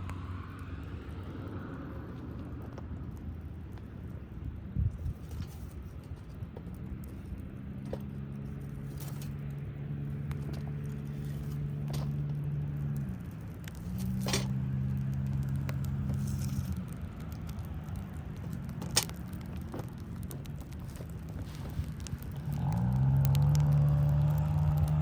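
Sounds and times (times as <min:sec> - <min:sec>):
wood fire crackling and popping: 0:00.0 - 0:25.0
car engine humming: 0:06.6 - 0:25.0.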